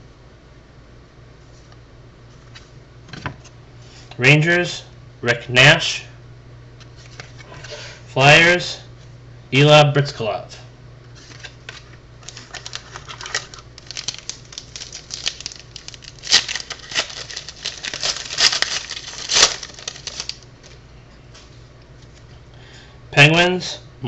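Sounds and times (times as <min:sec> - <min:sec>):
steady low hum: 0:00.0 - 0:24.0
cards clicking and rustling: 0:11.2 - 0:20.8.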